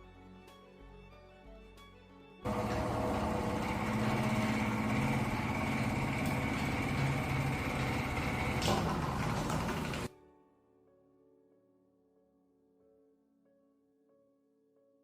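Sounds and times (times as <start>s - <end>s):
small electric motor running: 2.5s - 10.1s.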